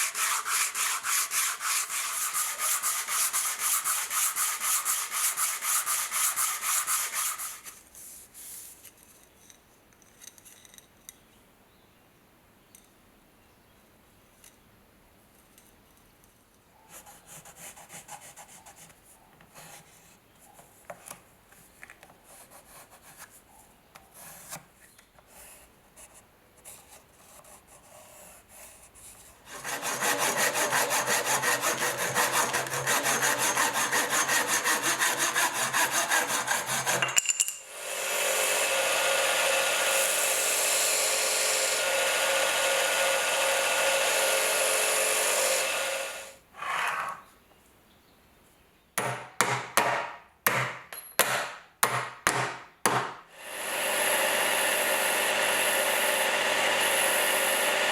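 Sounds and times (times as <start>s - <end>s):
hand rubbing and scraping: 0.0s - 9.0s
power tool running: 29.5s - 37.1s, 37.7s - 46.4s, 53.4s - 57.9s.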